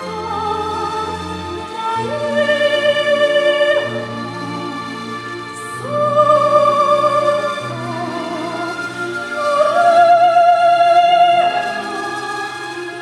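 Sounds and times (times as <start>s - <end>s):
operatic singing voice: 0.0s - 13.0s.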